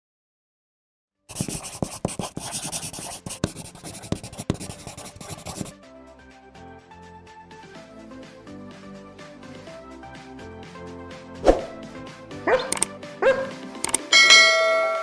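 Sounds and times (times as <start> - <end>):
scratchy rubbing noise: 1.3 - 5.7
music: 1.3 - 15.0
sharp clicks: 12.7 - 13.0, 13.8 - 14.1.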